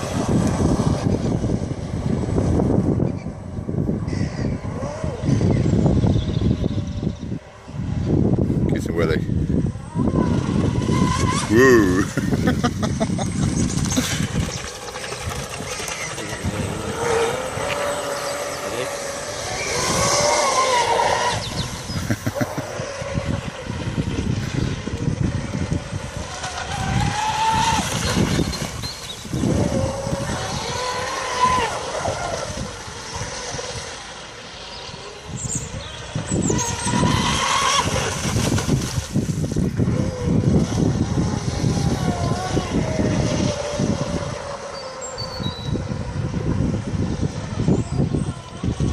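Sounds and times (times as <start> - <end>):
wind rumbling on microphone: 0.0 - 48.9
electric motor whine: 9.3 - 48.9.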